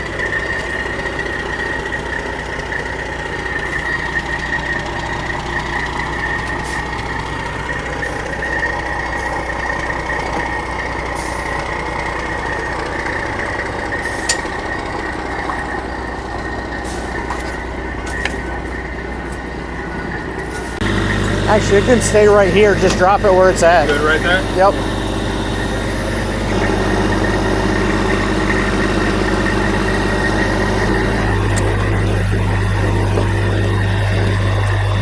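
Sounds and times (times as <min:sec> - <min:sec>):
heavy vehicle engine running: 0:00.0 - 0:35.0
steady high whine: 0:20.8 - 0:35.0.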